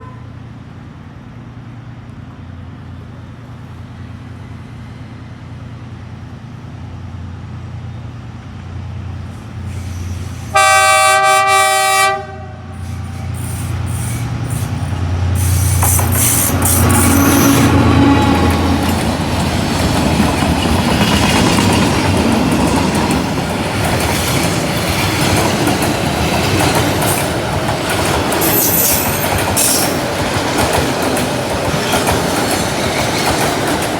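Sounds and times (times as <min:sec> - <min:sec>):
freight train rumbling: 0:00.0 - 0:33.9
locomotive engine hum: 0:00.0 - 0:33.9
high wheel squeal: 0:09.6 - 0:10.6, 0:12.8 - 0:19.8, 0:28.2 - 0:30.1
train horn blast: 0:10.4 - 0:14.8, 0:15.4 - 0:19.3
wheels clattering over rails: 0:15.7 - 0:33.9.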